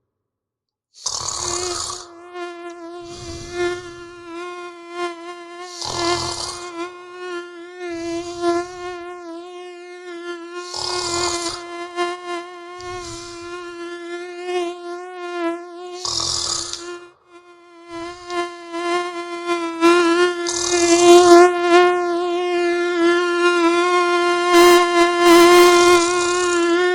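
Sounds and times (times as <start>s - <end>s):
person snoring: 1.0s - 2.1s, 3.0s - 4.1s, 5.7s - 6.7s, 10.6s - 11.6s, 12.8s - 13.5s, 16.0s - 16.9s, 20.4s - 21.0s
mosquito whining: 1.0s - 26.9s.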